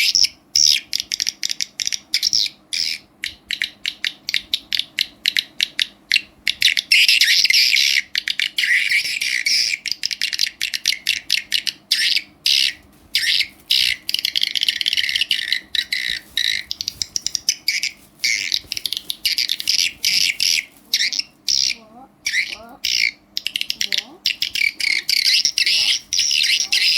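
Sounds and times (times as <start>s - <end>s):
swiftlet chirping and trills: 6.5s - 26.9s.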